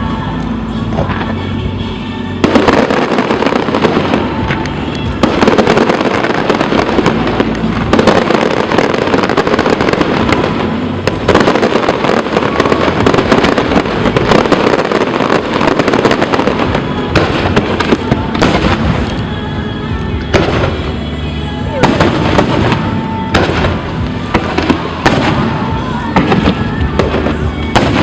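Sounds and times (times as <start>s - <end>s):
fireworks bursts and crackle: 0.0s - 28.0s
loud firework bangs: 2.4s - 19.3s, 20.3s - 21.0s, 21.7s - 28.0s.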